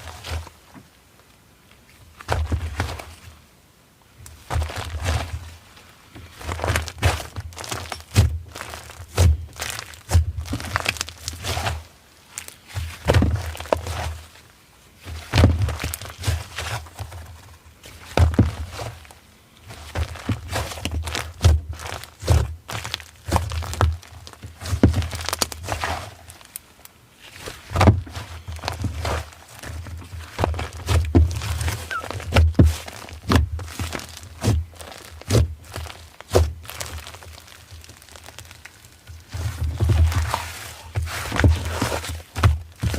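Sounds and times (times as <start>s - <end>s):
slime squishing: 4.4s - 5.6s, 6.2s - 14.4s, 15.0s - 42.9s.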